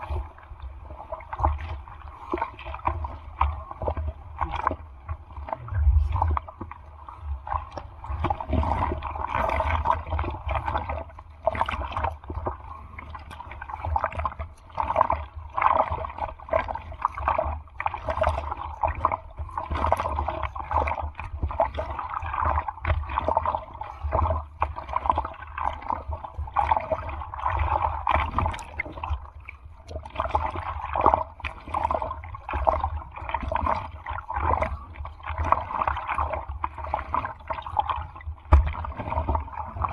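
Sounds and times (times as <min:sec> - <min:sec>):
low rumble of surf: 0:00.0 - 0:16.1
water splashing and gurgling: 0:00.0 - 0:39.9.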